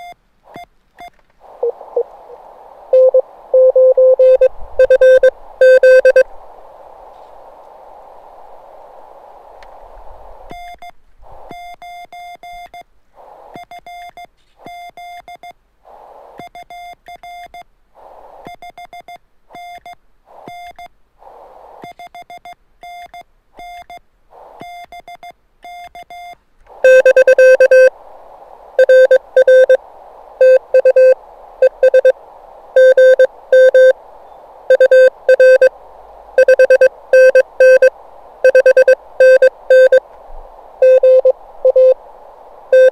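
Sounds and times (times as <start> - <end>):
radio receiver hiss: 0.0 - 11.8, 13.2 - 13.8, 15.8 - 16.6, 18.0 - 18.6, 20.3 - 22.2, 24.3 - 24.8, 26.6 - 42.9
lower morse sidetone: 2.9 - 6.3, 26.8 - 28.0, 28.7 - 40.1, 40.7 - 42.9
morse code tone: 3.0 - 6.2, 26.8 - 27.9, 28.8 - 29.8, 30.4 - 32.2, 32.8 - 34.0, 34.7 - 35.7, 36.4 - 40.0, 40.8 - 42.0.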